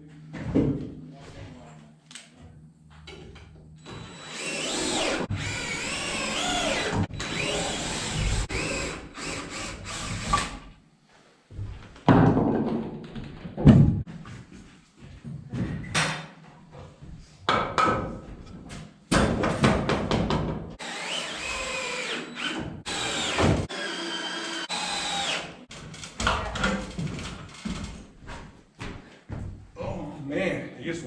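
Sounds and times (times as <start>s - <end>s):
power drill running: 3.8s - 10.5s, 20.8s - 25.7s.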